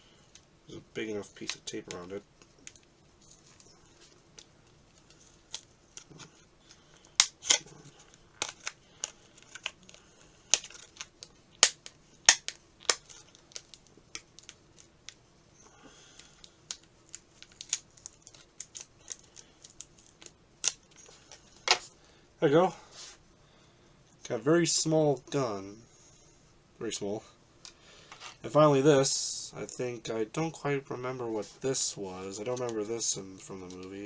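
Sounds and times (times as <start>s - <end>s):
tape peeling with sharp clicks: 1.4s - 15.2s, 16.2s - 21.9s.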